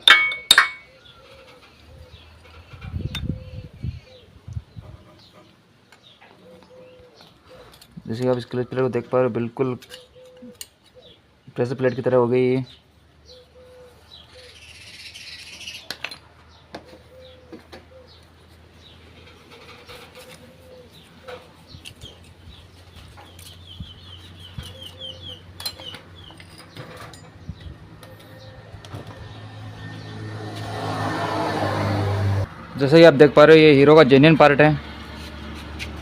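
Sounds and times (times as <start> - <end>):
birds chirping: 0.0 - 32.0
pigeon-like cooing: 0.9 - 5.5, 6.2 - 8.0, 9.9 - 11.2, 13.3 - 14.7, 16.8 - 18.2, 19.5 - 21.6, 24.6 - 25.4.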